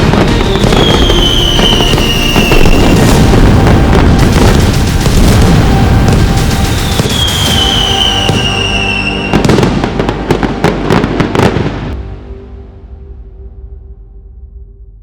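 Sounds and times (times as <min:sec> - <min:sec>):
falling firework whistle: 0:00.0 - 0:11.7
fireworks crackling and bangs: 0:00.0 - 0:12.0.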